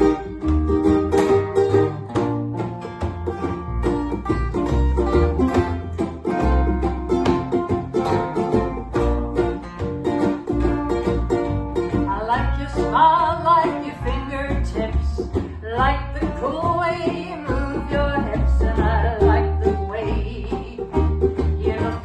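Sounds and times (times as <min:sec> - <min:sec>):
bass guitar notes: 0:00.0 - 0:22.0
plucked string picking: 0:00.0 - 0:22.0.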